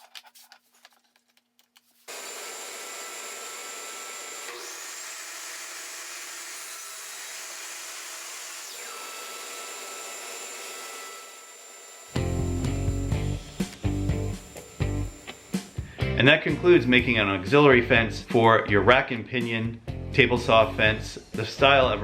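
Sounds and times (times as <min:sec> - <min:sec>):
saw blade cutting board: 0:02.1 - 0:16.0
table saw running: 0:02.1 - 0:17.0.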